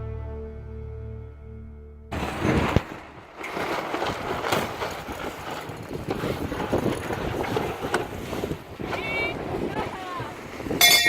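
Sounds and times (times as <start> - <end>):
water rushing past hull: 2.1 - 11.0
wind: 2.1 - 11.0
boat gear knocking and rattling: 2.3 - 11.0.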